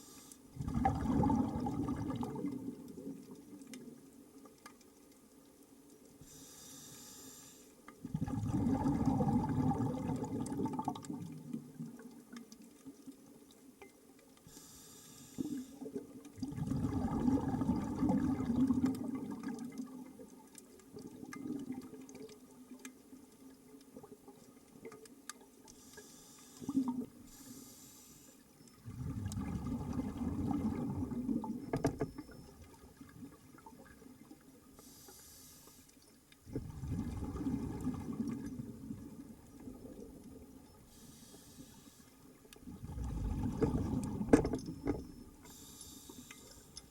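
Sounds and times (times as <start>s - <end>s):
regulator hiss on inhale: 0.0s - 0.5s, 6.2s - 7.9s, 14.5s - 15.9s, 25.7s - 28.5s, 34.8s - 36.0s, 40.9s - 42.3s, 45.4s - 46.9s
exhaust bubbles rushing: 0.6s - 2.7s, 8.1s - 11.3s, 16.4s - 19.4s, 28.9s - 31.6s, 36.5s - 39.1s, 42.7s - 44.4s.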